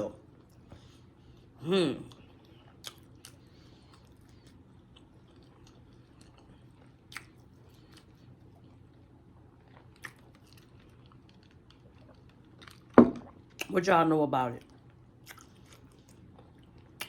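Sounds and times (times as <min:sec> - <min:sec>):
faint chewing: 0:00.4 - 0:13.7.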